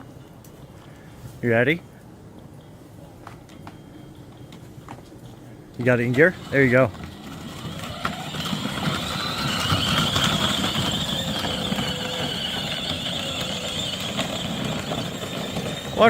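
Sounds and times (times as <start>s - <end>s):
plastic wheels rolling: 5.8s - 16.0s
toy car electric motors whining: 6.0s - 16.0s.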